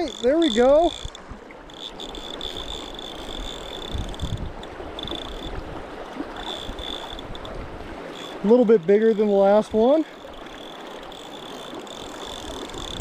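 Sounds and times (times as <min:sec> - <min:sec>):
river water rushing: 0:04.6 - 0:12.8.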